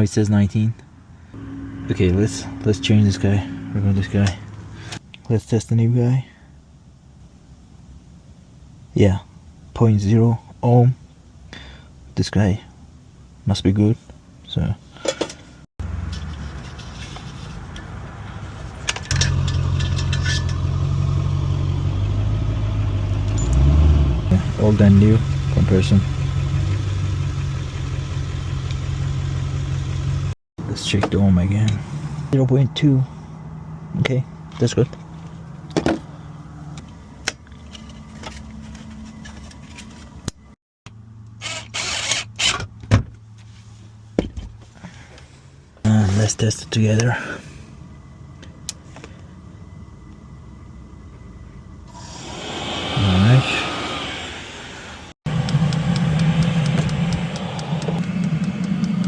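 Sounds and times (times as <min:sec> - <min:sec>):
low hum: 0:01.0 - 0:05.0, 0:49.5 - 0:59.0
rustling or whirring noise: 0:15.3 - 0:20.6, 0:36.6 - 0:40.6
engine idling: 0:24.3 - 0:30.3, 0:51.6 - 0:59.0.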